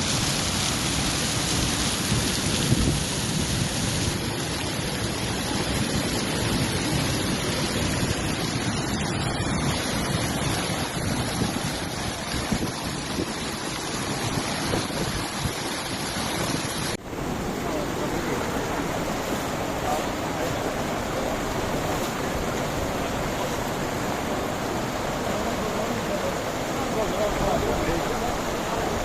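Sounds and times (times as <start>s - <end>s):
floodwater rushing: 0.0s - 29.0s
wind buffeting microphone: 1.9s - 4.3s, 5.7s - 25.2s.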